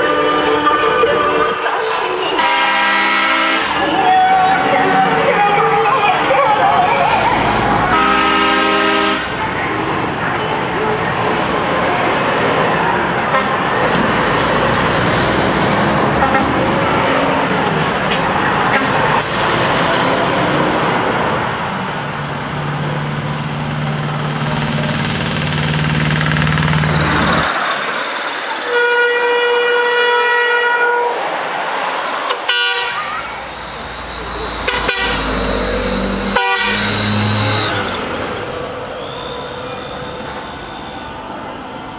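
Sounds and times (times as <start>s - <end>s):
truck engines running: 0.0s - 41.9s
truck air horns: 2.3s - 4.7s, 7.7s - 9.5s, 13.3s - 17.7s, 18.6s - 20.1s, 28.6s - 31.3s, 32.3s - 38.3s.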